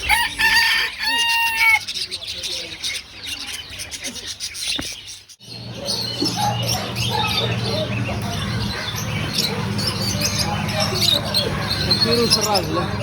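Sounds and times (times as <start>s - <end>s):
small caged birds chirping: 0.0s - 13.0s
steady low hum: 5.4s - 13.0s.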